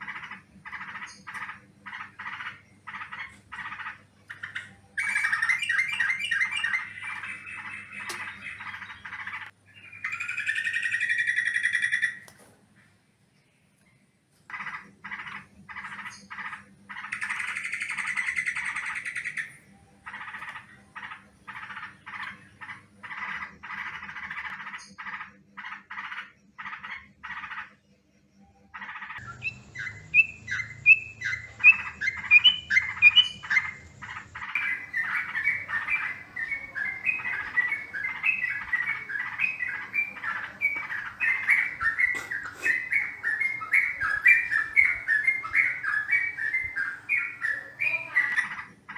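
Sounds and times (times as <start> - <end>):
bird harsh chattering calls: 0.0 - 12.2, 14.5 - 27.8, 28.8 - 48.9
bird whistled song notes: 4.3 - 12.2, 29.2 - 48.7.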